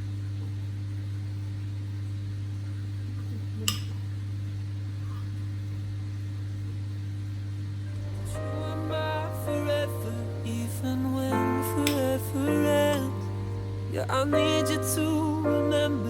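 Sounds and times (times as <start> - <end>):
low electrical hum: 0.0 - 16.0
soft music: 7.9 - 16.0.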